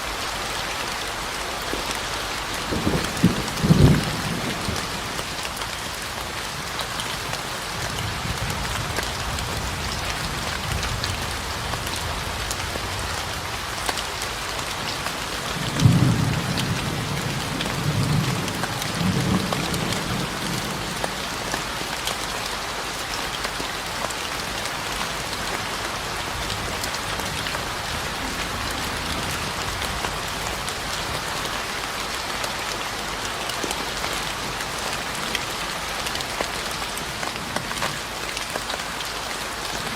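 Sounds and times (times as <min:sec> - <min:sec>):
steady rain: 0:00.0 - 0:39.9
rolling thunder: 0:02.7 - 0:05.1, 0:26.5 - 0:31.0.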